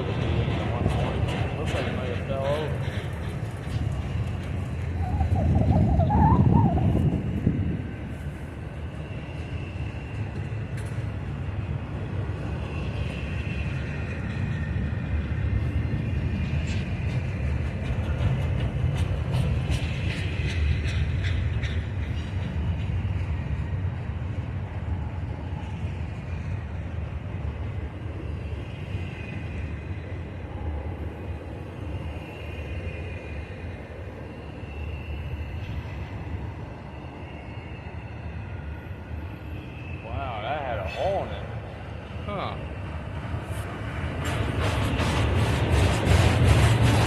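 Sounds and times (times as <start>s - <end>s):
train wheels rumbling on rail: 0.0s - 47.0s
high wavering squeal: 4.8s - 8.1s.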